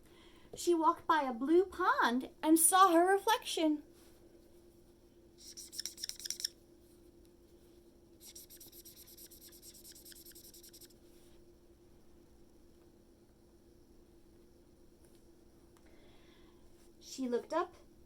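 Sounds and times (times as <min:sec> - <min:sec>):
faint steady hum: 0:00.0 - 0:18.0
coloring scribbling on paper: 0:05.4 - 0:06.5, 0:08.2 - 0:10.9.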